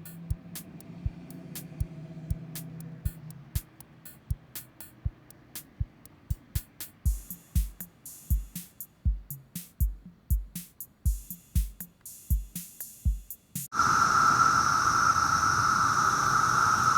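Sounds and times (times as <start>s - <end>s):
clicking percussion: 0.0s - 13.7s
deep kick drum: 1.8s - 4.5s, 6.3s - 13.7s.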